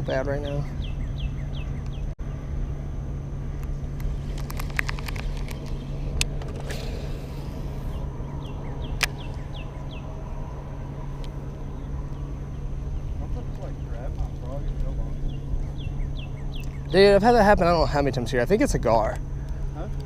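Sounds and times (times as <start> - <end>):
low engine-like rumble: 0.0 - 20.0
descending bird chirps: 0.4 - 2.6, 6.8 - 14.1, 15.0 - 17.9
short hiss: 6.5 - 7.8.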